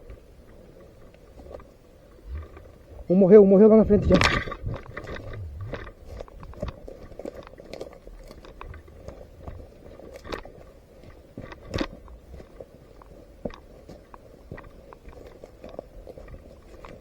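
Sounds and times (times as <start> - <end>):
crunching rustling movement: 0.0 - 17.0
footsteps: 3.8 - 17.0.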